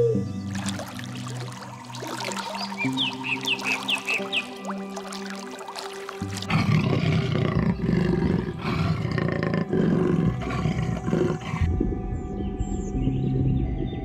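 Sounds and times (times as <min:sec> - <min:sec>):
large animal roaring: 0:06.2 - 0:11.7.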